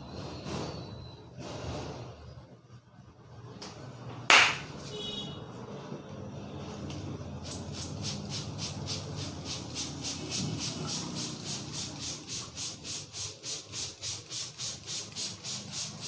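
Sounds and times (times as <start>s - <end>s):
hand smack: 4.3s - 4.7s.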